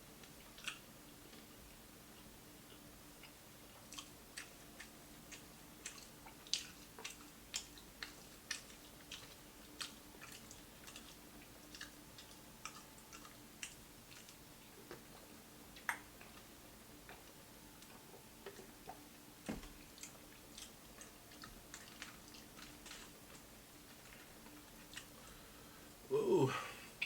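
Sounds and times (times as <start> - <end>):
chewing crispy food: 0.1 - 25.6.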